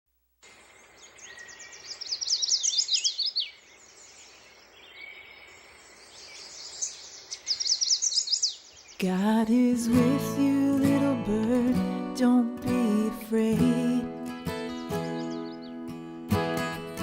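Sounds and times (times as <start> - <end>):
songbird chirping and trilling: 0.4 - 10.9, 14.2 - 16.3.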